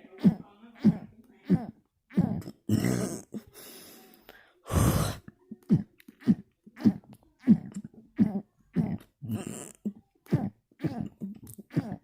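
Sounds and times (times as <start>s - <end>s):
person burping: 0.2s - 3.4s, 4.7s - 12.0s
person exhaling loudly: 4.7s - 5.2s.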